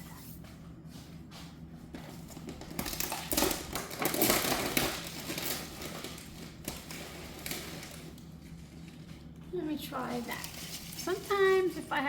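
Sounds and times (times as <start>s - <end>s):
plastic bag crinkling: 2.6s - 9.3s, 10.0s - 12.0s.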